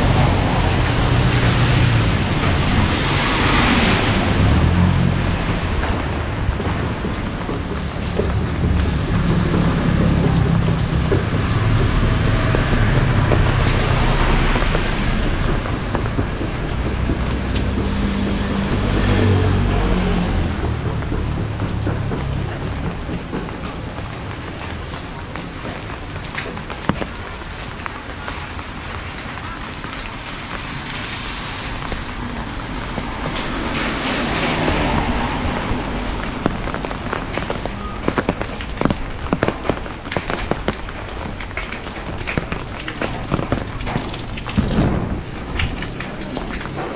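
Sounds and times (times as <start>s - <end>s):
steady rushing noise: 0.0s - 29.1s
vehicle engines humming: 0.0s - 46.9s.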